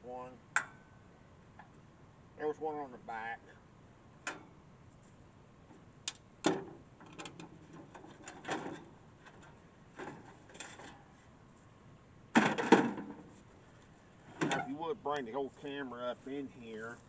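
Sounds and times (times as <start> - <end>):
casing clicks knocks and scrapes: 5.7 - 11.2.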